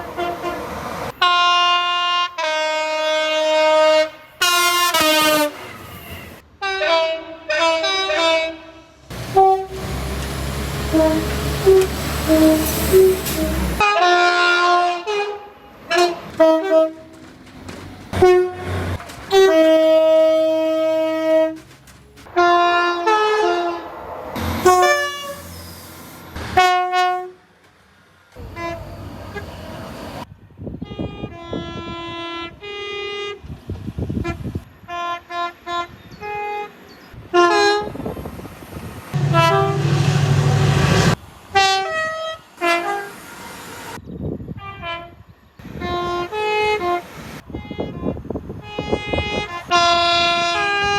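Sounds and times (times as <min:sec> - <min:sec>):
train horn: 0:00.0 - 0:10.0, 0:10.7 - 0:17.2, 0:18.2 - 0:21.6, 0:22.3 - 0:25.6, 0:26.5 - 0:27.5, 0:28.4 - 0:29.6, 0:30.8 - 0:33.5, 0:34.2 - 0:38.1, 0:39.2 - 0:43.2, 0:44.6 - 0:50.9
train running noise: 0:09.0 - 0:13.9, 0:15.8 - 0:30.3, 0:33.4 - 0:44.0.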